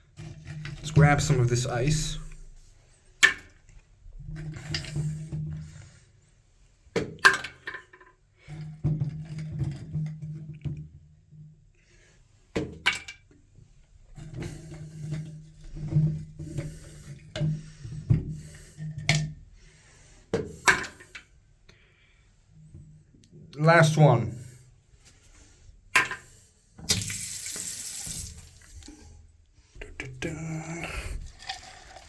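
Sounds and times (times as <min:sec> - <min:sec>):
ice cubes clattering: 0:30.4 - 0:32.0.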